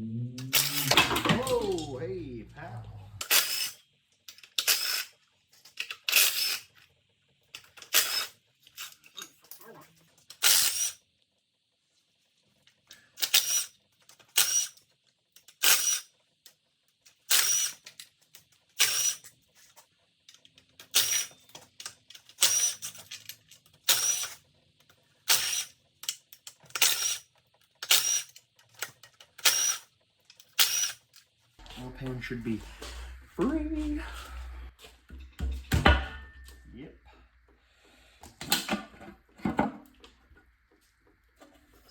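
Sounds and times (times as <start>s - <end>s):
ratchet wrench clicking: 14.4s - 14.8s, 23.9s - 24.4s, 25.3s - 27.2s, 29.4s - 29.8s, 30.5s - 31.0s.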